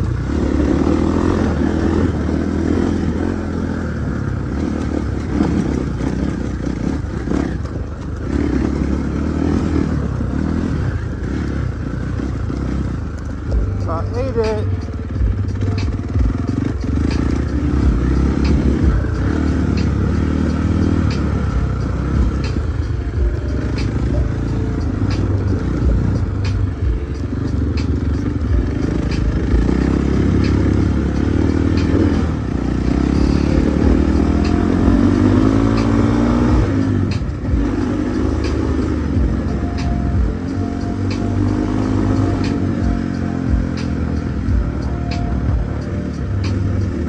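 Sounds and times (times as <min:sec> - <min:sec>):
dirt bike engine revving: 0:00.0 - 0:47.0.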